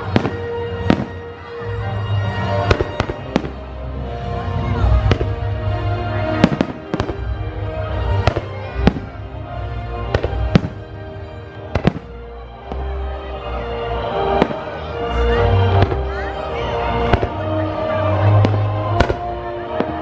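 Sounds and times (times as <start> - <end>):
fireworks bangs: 0.0 - 1.5, 2.3 - 3.8, 4.6 - 5.5, 6.1 - 9.4, 10.0 - 13.0, 14.1 - 20.0
music soundtrack: 0.0 - 20.0.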